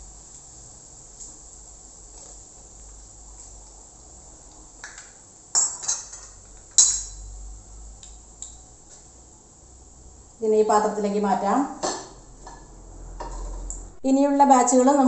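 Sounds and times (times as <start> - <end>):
food frying in hot oil: 0.0 - 13.8
metal spoon clinking against pan: 5.5 - 7.3.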